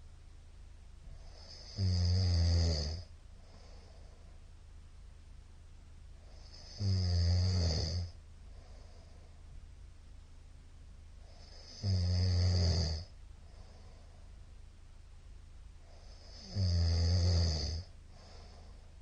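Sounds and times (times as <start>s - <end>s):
man snoring: 1.2s - 3.1s, 6.4s - 8.2s, 11.3s - 13.1s, 16.0s - 17.9s.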